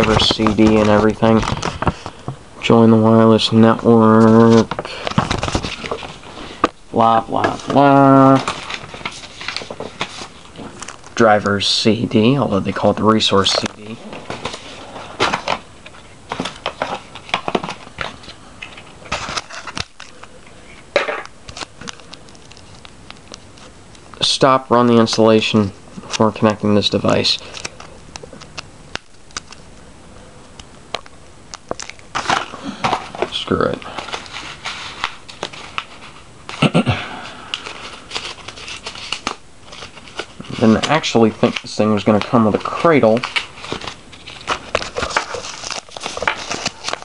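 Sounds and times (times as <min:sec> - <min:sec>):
packaging rustling and clicking: 0:00.0 - 0:02.4, 0:04.0 - 0:11.6, 0:12.7 - 0:20.3, 0:21.0 - 0:23.7, 0:27.2 - 0:29.6, 0:30.9 - 0:36.2, 0:37.5 - 0:47.0.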